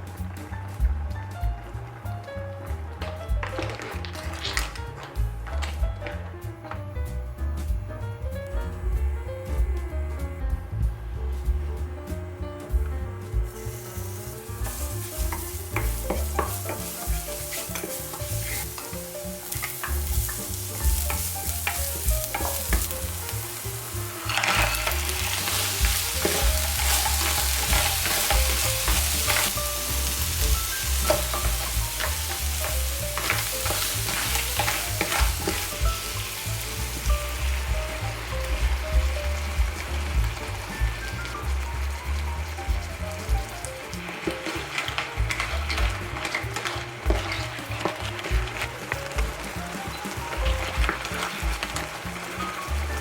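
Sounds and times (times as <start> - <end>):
clams sizzling in oil: 0.0 - 7.8, 8.4 - 53.0
utensil scraping a pan: 13.2 - 53.0.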